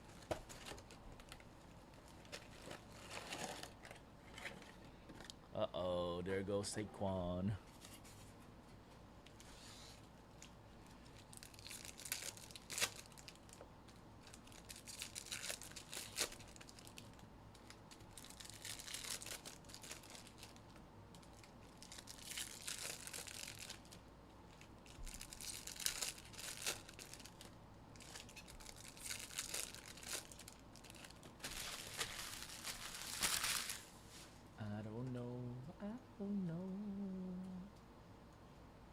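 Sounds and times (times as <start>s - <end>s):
foil wrappers tearing and crinkling: 2.0s - 4.5s, 11.0s - 13.6s, 14.2s - 20.6s, 21.2s - 33.9s.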